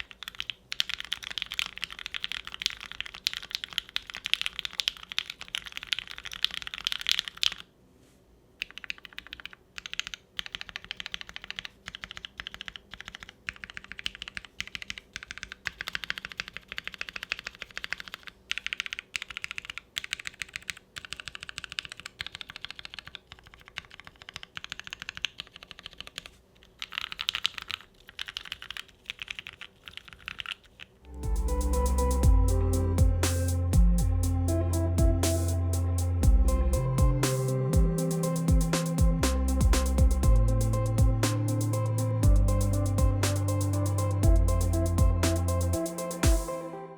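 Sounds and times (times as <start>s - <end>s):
typing on mechanical keyboard: 0.0s - 7.7s, 8.6s - 30.9s.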